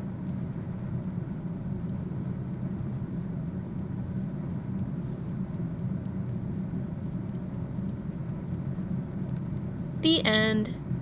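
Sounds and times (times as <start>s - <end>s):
steady low rumble: 0.0s - 11.0s
faint high ticks: 4.7s - 9.9s.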